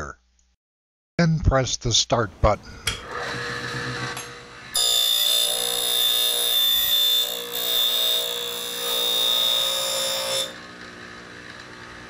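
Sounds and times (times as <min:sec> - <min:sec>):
key cutter metallic whine: 0:02.8 - 0:12.0.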